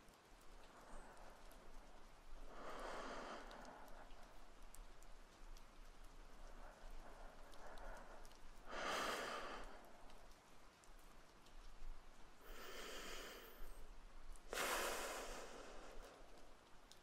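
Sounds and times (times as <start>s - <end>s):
steady rain: 0.0s - 17.0s
man breathing deeply: 12.4s - 13.8s, 14.5s - 16.4s.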